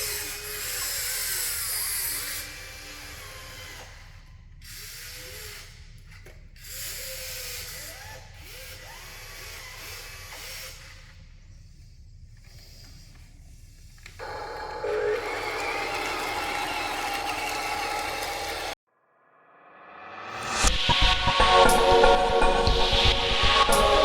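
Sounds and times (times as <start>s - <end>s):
small electric motors whining: 14.2s - 18.8s.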